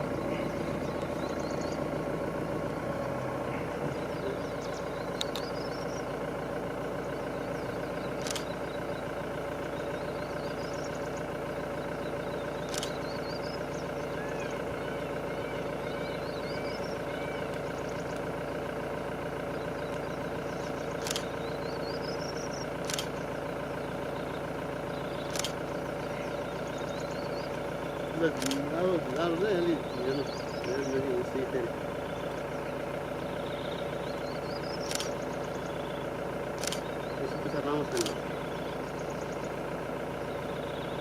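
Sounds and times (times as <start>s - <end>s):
vehicle engine idling: 0.0s - 41.0s
sharp clicks: 4.5s - 5.8s, 8.1s - 8.8s, 12.5s - 13.5s, 17.5s - 18.3s, 19.8s - 21.5s, 22.8s - 23.3s, 25.1s - 25.8s, 28.3s - 29.4s, 34.1s - 35.7s, 36.5s - 38.4s.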